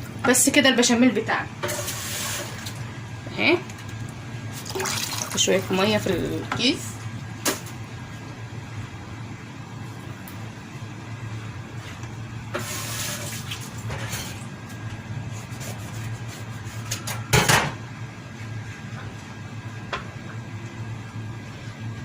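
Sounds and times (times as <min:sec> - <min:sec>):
liquid pouring into a pot: 0:04.6 - 0:05.5.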